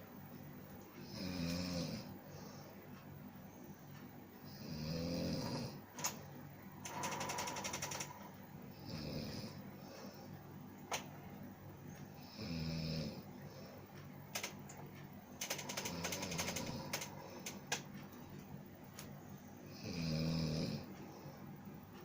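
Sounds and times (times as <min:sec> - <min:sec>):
person snoring: 0:01.0 - 0:02.1, 0:04.5 - 0:05.8, 0:08.7 - 0:09.6, 0:12.2 - 0:13.2, 0:15.7 - 0:17.5, 0:19.7 - 0:20.9
small sharp clicks: 0:14.3 - 0:19.2.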